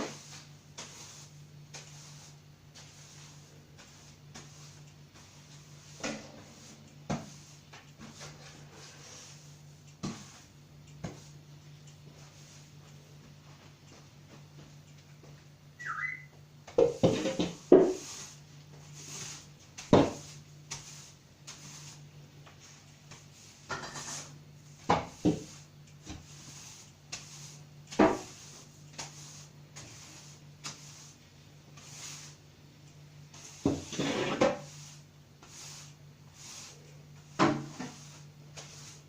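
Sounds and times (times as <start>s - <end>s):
short whistle: 15.8s - 16.3s.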